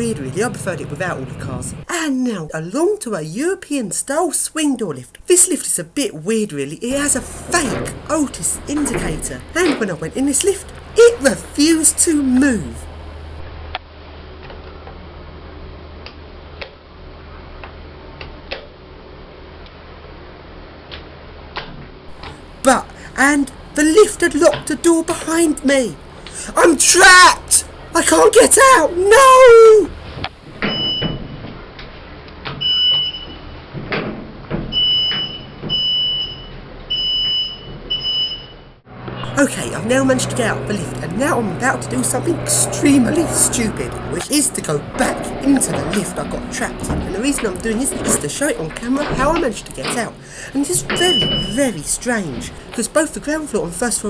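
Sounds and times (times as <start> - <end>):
low steady hum: 39.1 - 54.0
lift control panel beeps: 50.9 - 51.6.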